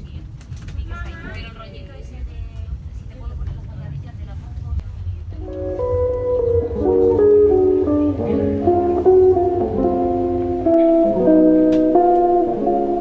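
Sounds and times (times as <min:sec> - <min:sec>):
acoustic guitar melody: 0:05.4 - 0:13.0.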